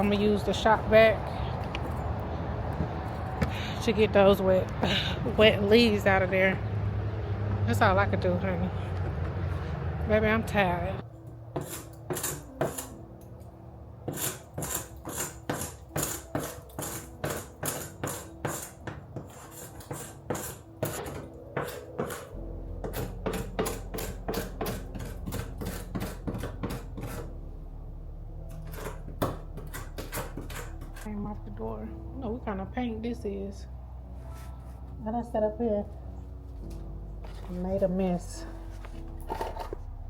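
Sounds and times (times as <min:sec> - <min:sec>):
background music: 0:00.0 - 0:40.0
paint scraping off a door: 0:14.1 - 0:27.4, 0:28.5 - 0:31.1.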